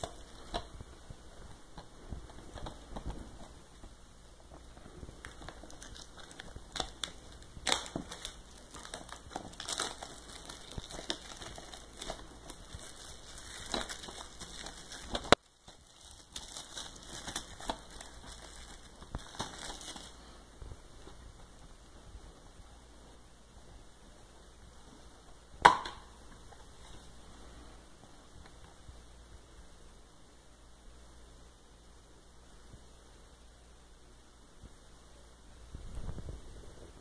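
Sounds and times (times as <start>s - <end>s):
plastic packaging crinkling: 0.0s - 0.8s, 2.1s - 20.4s.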